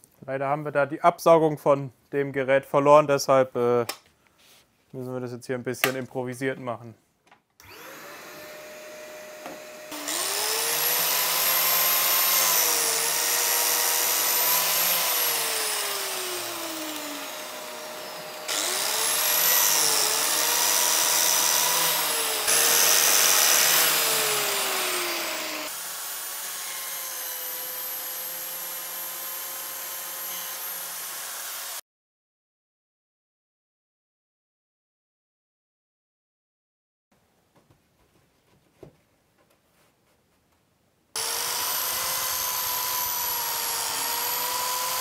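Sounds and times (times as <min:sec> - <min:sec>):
vacuum hum: 0:07.6 - 0:25.7
biscuit joiner motor whine: 0:07.6 - 0:31.8, 0:41.2 - 0:45.0.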